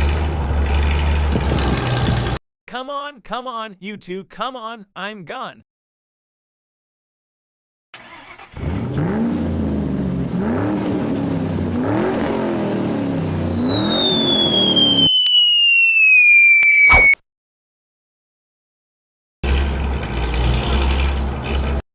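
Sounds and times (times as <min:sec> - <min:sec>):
truck engine revving: 0:00.0 - 0:02.4, 0:08.0 - 0:15.1, 0:19.4 - 0:21.8
long falling whistle: 0:13.1 - 0:17.2
short sharp crash: 0:16.8 - 0:17.2.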